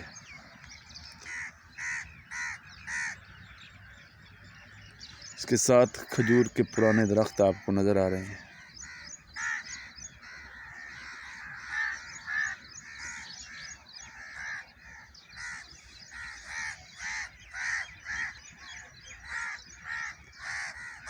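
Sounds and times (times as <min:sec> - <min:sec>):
birds chirping: 0:00.0 - 0:21.0
crows cawing: 0:01.1 - 0:03.6, 0:05.4 - 0:21.0.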